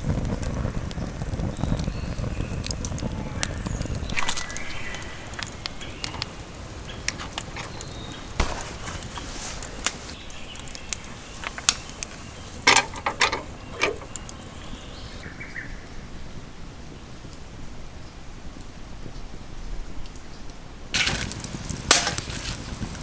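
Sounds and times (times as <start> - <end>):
wood fire crackling and popping: 0.0 - 15.2, 20.9 - 23.0.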